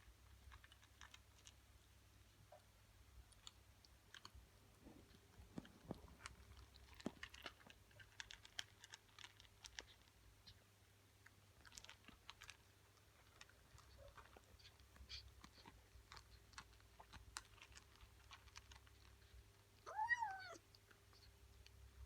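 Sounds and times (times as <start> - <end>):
kitten crunching dry kibble: 0.0 - 22.0.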